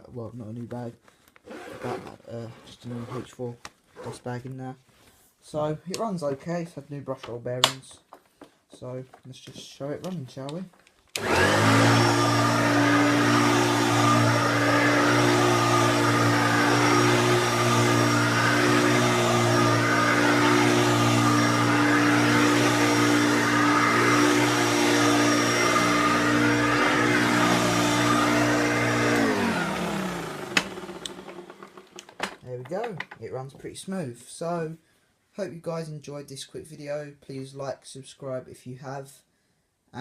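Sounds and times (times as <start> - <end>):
vacuum cleaner running: 11.2 - 32.4.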